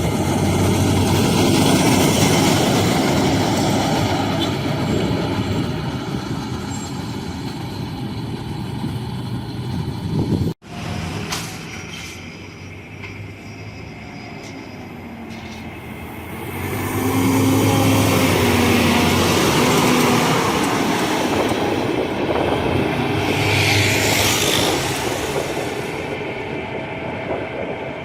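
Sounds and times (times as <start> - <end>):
bus engine driving past: 6.6 - 26.2.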